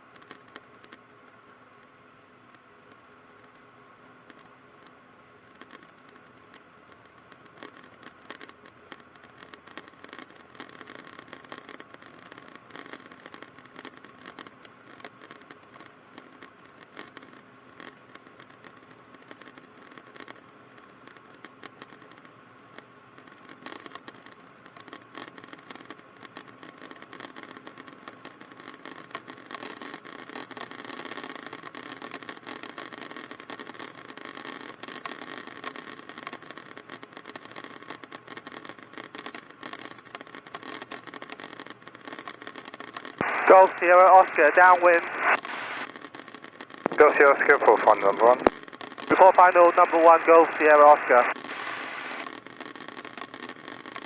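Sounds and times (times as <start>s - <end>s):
crackling intercom clicks: 43.2s - 45.9s, 46.8s - 52.3s.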